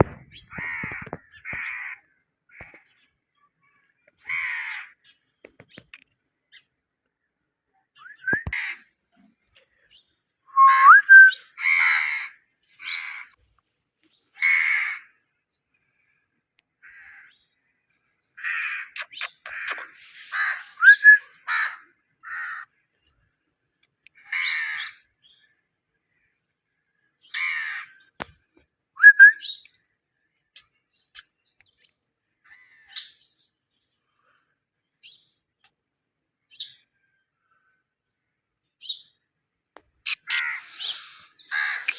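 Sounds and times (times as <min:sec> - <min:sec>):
parrot whistling: 0:10.5 - 0:11.3, 0:20.8 - 0:21.2, 0:29.0 - 0:29.5
parrot squawking and chirping: 0:18.5 - 0:21.7, 0:40.0 - 0:41.9.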